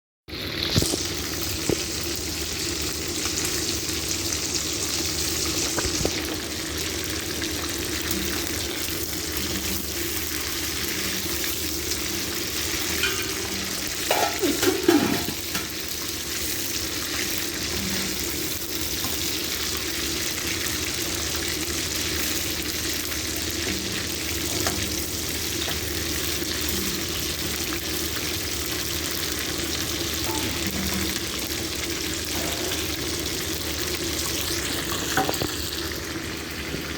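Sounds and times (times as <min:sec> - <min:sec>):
chicken sizzling in a pan: 0:00.3 - 0:36.9.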